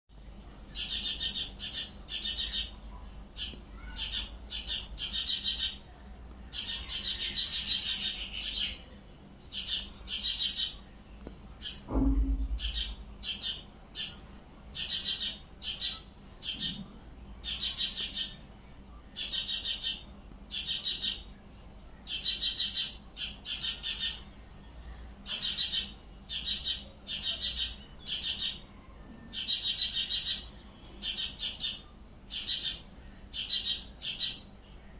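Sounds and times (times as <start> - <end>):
bird chirping: 0.7 - 2.8, 3.4 - 5.9, 6.5 - 10.8, 11.6 - 18.4, 19.2 - 21.3, 22.1 - 24.2, 25.2 - 28.6, 29.3 - 34.5
low thump: 11.9 - 12.7.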